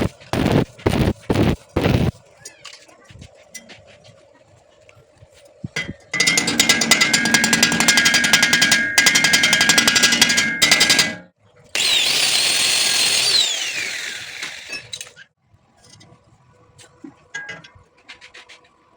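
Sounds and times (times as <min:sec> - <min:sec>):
welding arc crackling: 0:00.0 - 0:02.1
power tool whirring: 0:06.3 - 0:11.2, 0:11.8 - 0:15.2.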